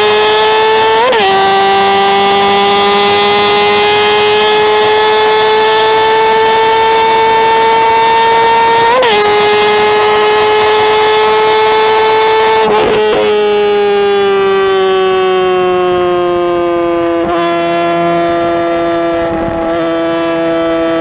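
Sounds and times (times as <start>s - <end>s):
motorcycle engine at high revs: 0.0s - 21.0s.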